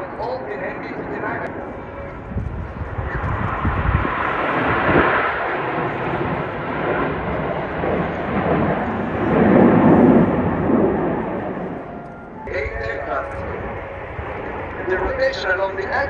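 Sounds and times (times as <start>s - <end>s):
jets flying past: 0.0s - 16.0s.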